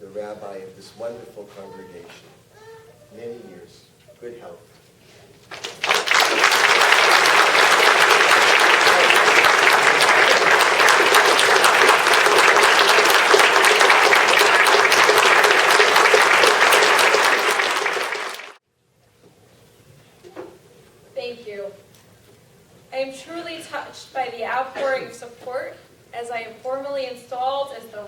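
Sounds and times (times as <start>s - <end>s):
congregation applauding: 5.5s - 18.6s.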